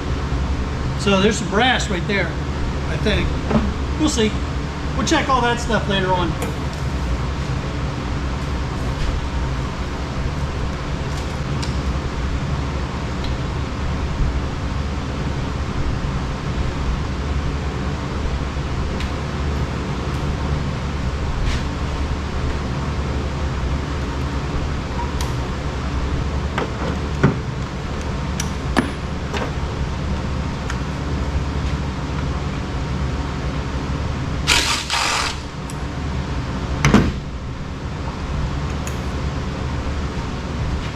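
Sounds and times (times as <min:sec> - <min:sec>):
steady low hum: 0:00.0 - 0:40.9
loud harsh rasp: 0:34.5 - 0:35.5.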